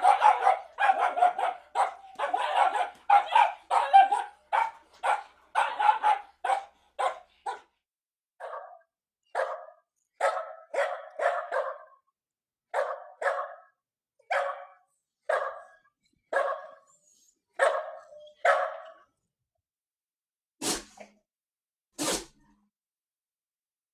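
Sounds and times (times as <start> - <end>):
dog barking: 0.0 - 7.8, 8.4 - 12.0, 12.7 - 16.9, 17.6 - 19.1.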